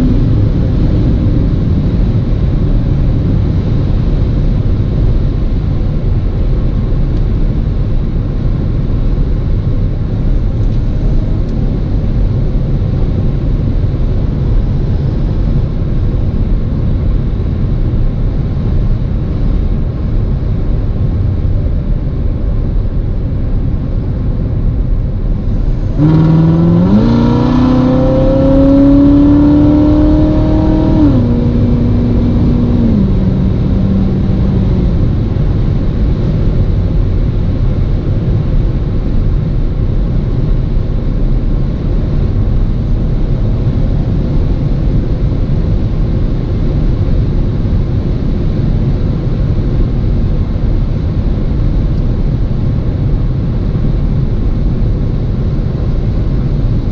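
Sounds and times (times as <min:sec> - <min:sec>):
car engine revving up: 0:00.0 - 0:03.2, 0:25.4 - 0:36.4
road and engine noise: 0:00.0 - 0:56.9.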